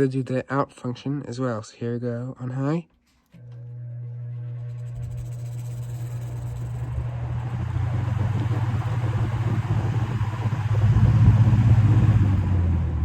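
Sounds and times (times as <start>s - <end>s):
box fan starting up: 3.4s - 13.0s.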